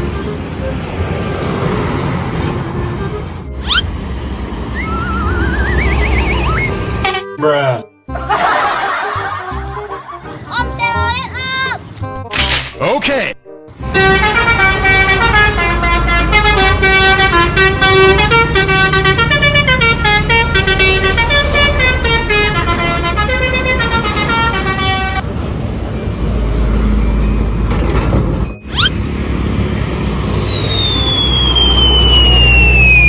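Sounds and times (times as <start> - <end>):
bus horn playing a tune: 2.6 - 3.6, 13.8 - 25.2
long falling whistle tone: 4.7 - 6.8, 28.7 - 29.0, 29.8 - 33.0.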